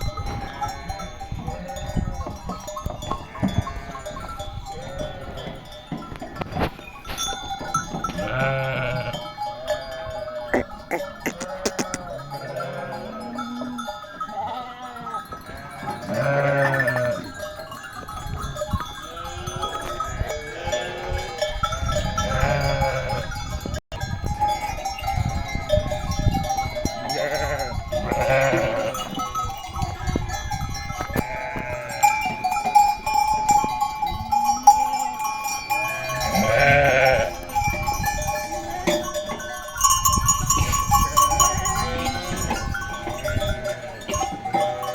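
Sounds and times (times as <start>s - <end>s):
sheep bleating: 8.2s - 17.2s, 19.1s - 21.5s, 22.2s - 23.3s, 27.1s - 29.1s, 31.2s - 32.1s, 35.8s - 37.6s, 41.4s - 44.9s.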